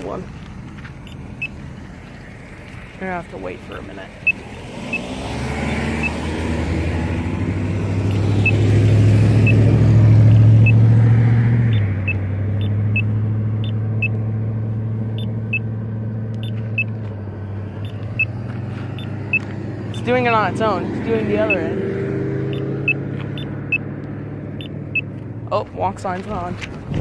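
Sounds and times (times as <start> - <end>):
vehicle engine humming: 0.0 - 27.0
pedestrian button locator tone ticking: 1.0 - 1.6, 3.6 - 6.2, 8.1 - 8.6, 9.4 - 10.9, 11.7 - 14.3, 15.1 - 15.7, 16.3 - 17.0, 17.8 - 21.8, 22.5 - 25.1.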